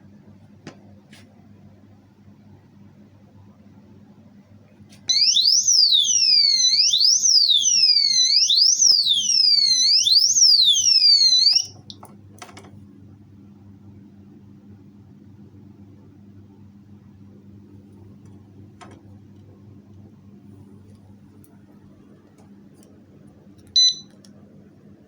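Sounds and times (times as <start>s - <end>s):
alarm siren wailing: 5.1s - 11.8s.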